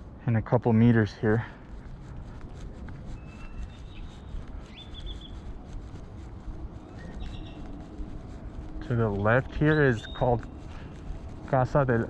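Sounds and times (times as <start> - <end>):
low outdoor rumble: 0.0 - 12.0
high bird calls: 3.1 - 5.6, 6.8 - 7.8, 9.0 - 11.6
bird whistle and trill: 3.2 - 5.5, 7.0 - 7.7, 9.5 - 10.6.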